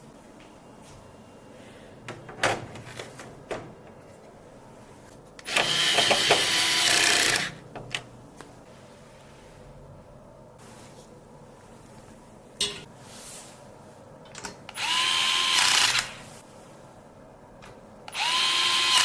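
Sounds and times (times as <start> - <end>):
small power tool running: 5.5 - 7.6, 14.8 - 16.2, 18.1 - 19.0.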